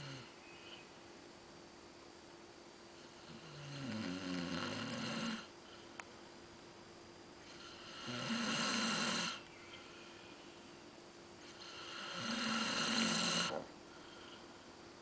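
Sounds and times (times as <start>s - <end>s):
man snoring: 0.0s - 0.3s, 3.2s - 5.5s, 7.5s - 9.4s, 11.5s - 13.7s.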